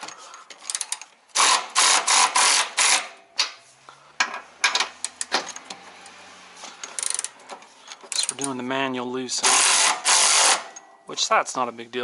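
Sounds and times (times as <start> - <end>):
ratchet pawl clicking: 7.0 - 7.4.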